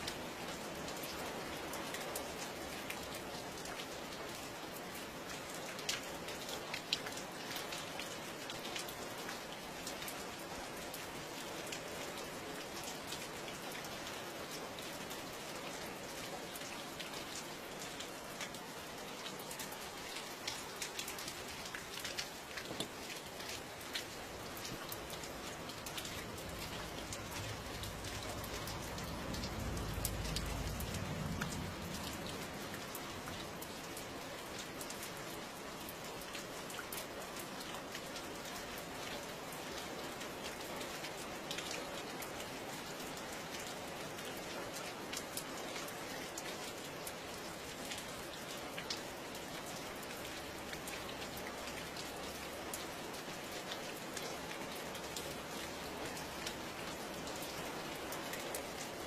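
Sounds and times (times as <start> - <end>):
steady rain falling: 0.0 - 59.0
raindrops ticking: 19.2 - 35.0.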